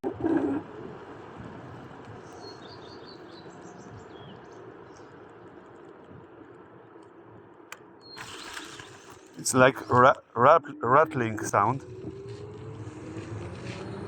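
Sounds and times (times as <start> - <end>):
electric scooter running: 0.0 - 10.1, 10.8 - 14.0.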